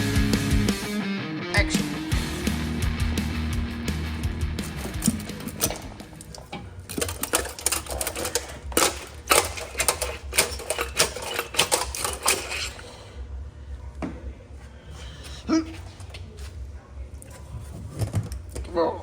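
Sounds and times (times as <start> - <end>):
steady low hum: 1.7 - 19.0
metallic clicks of hand tools: 4.7 - 12.7.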